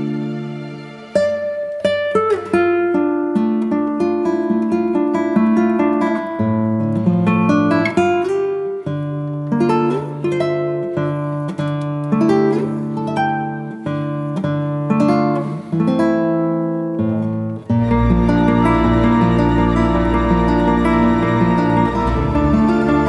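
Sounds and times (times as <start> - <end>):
acoustic guitar music: 0.0 - 23.0.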